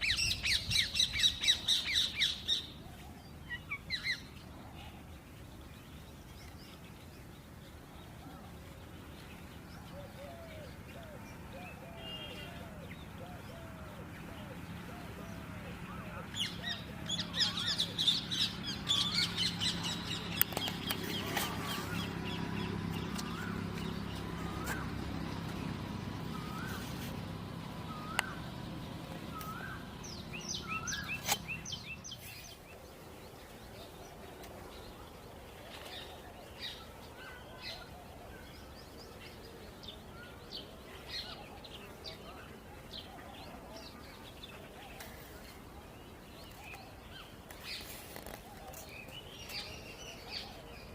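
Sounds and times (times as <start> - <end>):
low steady hum: 0.0 - 34.6
birds calling and chirping: 0.0 - 50.9.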